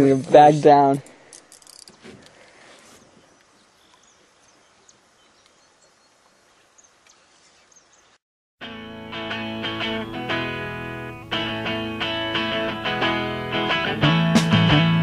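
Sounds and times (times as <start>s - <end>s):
bird chirps: 2.9s - 8.2s.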